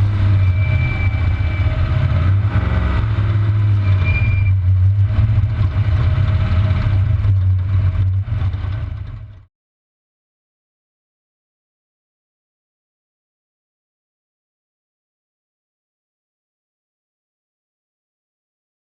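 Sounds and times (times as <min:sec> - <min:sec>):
race truck engine idling: 0:03.4 - 0:09.5.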